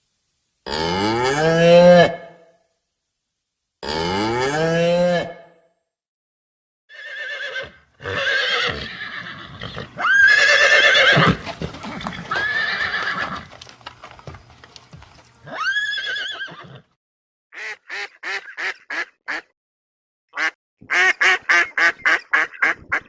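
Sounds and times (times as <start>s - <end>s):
horse whinnying: 6.9s - 13.5s, 15.4s - 16.9s.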